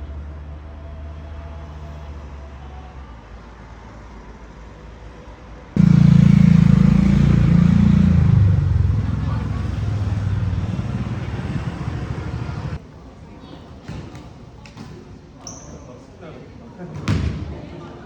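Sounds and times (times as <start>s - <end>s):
close vehicle engine: 5.8s - 12.8s
low steady engine hum: 5.8s - 12.8s.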